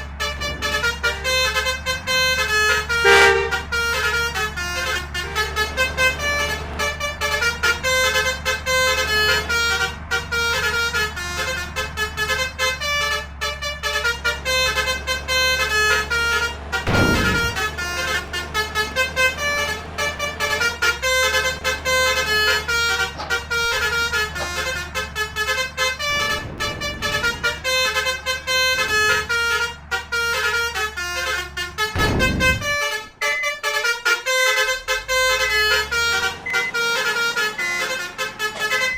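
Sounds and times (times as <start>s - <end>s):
low engine hum: 0.0s - 38.9s
multi-tone horn tune: 0.0s - 38.9s
rushes of noise: 26.0s - 28.2s.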